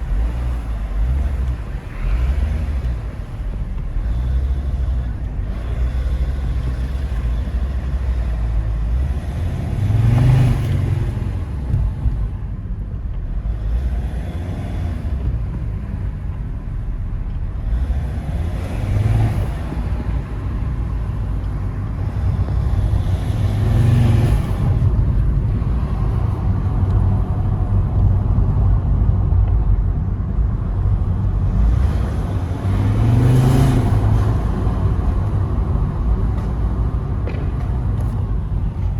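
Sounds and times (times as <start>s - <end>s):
diesel engine rumbling and revving: 0.0s - 38.9s
intake rush: 17.7s - 38.9s.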